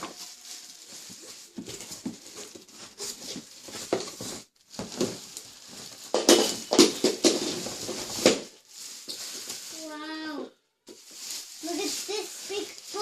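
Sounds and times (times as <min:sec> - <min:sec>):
cardboard box rustling: 0:00.0 - 0:08.4
cardboard scraping: 0:00.0 - 0:08.4.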